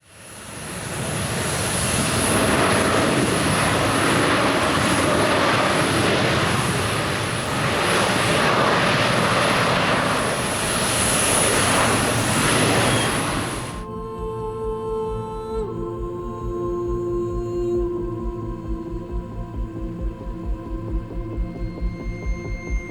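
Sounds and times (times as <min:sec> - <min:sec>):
jet engines in reverse thrust: 0:00.0 - 0:13.9
soft ambient music: 0:10.3 - 0:22.9.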